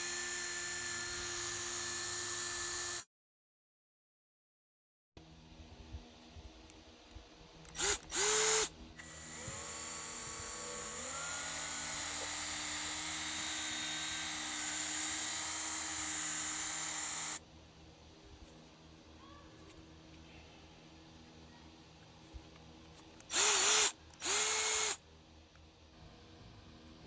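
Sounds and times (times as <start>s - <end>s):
power drill spinning: 0.0s - 3.0s, 7.7s - 17.4s, 23.2s - 25.0s.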